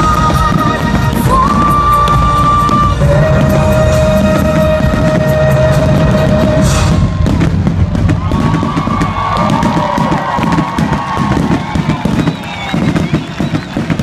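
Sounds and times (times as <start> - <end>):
loud music with long notes: 0.0 - 10.8
low rumble: 0.0 - 12.0
fireworks cracks and bangs: 0.0 - 14.0.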